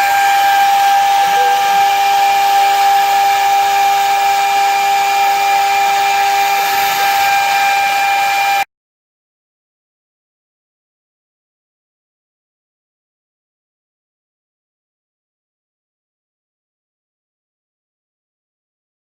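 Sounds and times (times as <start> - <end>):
cnc spindle milling whine: 0.0 - 8.6.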